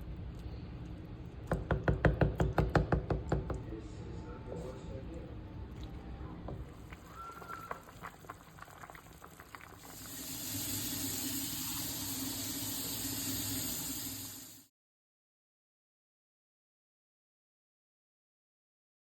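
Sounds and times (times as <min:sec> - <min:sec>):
soup boiling and bubbling: 0:05.9 - 0:14.7.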